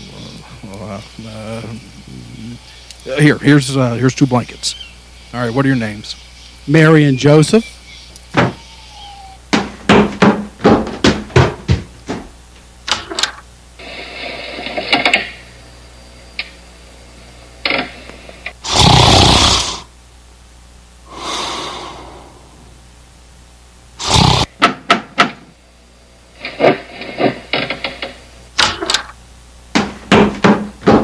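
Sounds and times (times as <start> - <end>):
person snoring loudly: 0.0 - 2.6, 18.6 - 19.9, 21.1 - 22.6, 24.0 - 24.5
knocks and thumps: 8.3 - 8.6, 9.5 - 13.4, 29.7 - 31.0.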